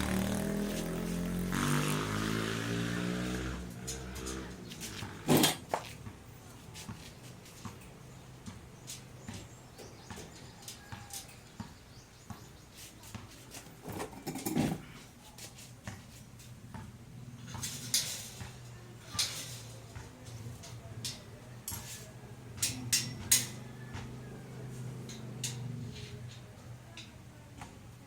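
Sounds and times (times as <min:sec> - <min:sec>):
metal parts clattering: 0:05.2 - 0:05.6, 0:19.2 - 0:19.8
metal parts clicking and tapping: 0:17.6 - 0:21.9, 0:22.6 - 0:23.6.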